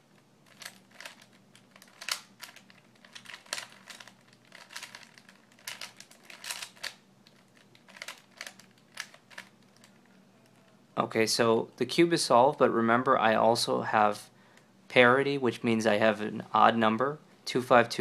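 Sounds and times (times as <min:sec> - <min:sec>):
puzzle cube plastic clicks: 0:00.4 - 0:10.6.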